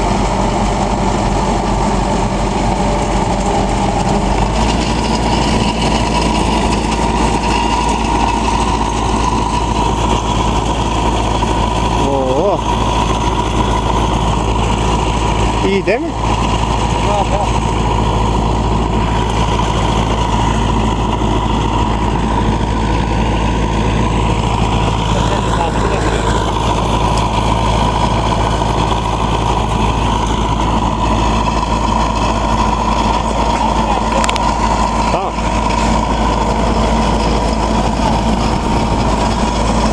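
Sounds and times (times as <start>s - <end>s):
constant whine: 0.0s - 39.9s
engine running steadily: 0.0s - 39.9s.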